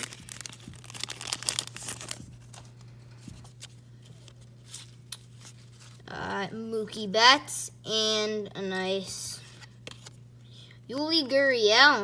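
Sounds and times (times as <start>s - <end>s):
wrapper tearing and crinkling: 0.0s - 2.8s
cards rustling: 0.0s - 6.0s, 9.4s - 10.2s
low electrical hum: 0.0s - 12.0s.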